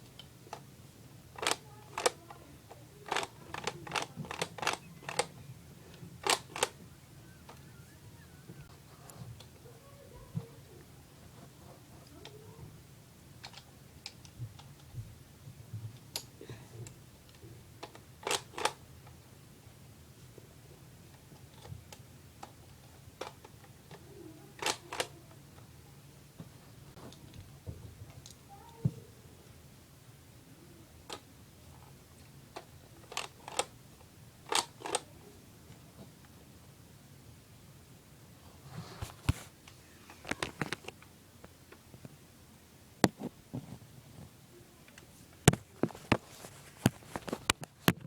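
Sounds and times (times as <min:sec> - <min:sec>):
loud plastic clicks: 0:01.4 - 0:02.2, 0:03.0 - 0:05.4, 0:06.2 - 0:06.8, 0:17.8 - 0:18.8, 0:24.6 - 0:25.1, 0:32.6 - 0:33.8, 0:34.5 - 0:35.1
plastic clicks and clacks: 0:01.4 - 0:06.8, 0:13.4 - 0:15.0, 0:15.8 - 0:18.8, 0:24.6 - 0:25.2, 0:32.2 - 0:33.8, 0:34.5 - 0:35.1, 0:40.2 - 0:42.1.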